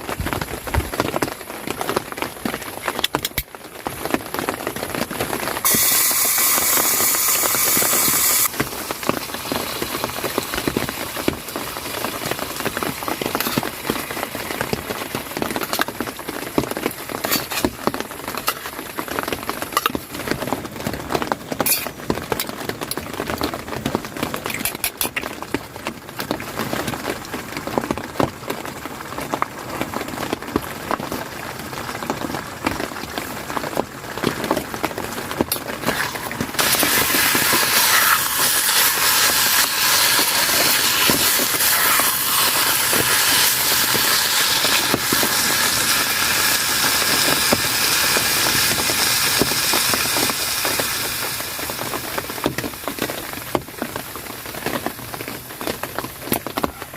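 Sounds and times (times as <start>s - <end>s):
rain pattering: 0.0s - 56.9s
burst of steady hiss: 5.6s - 10.6s, 36.0s - 52.8s.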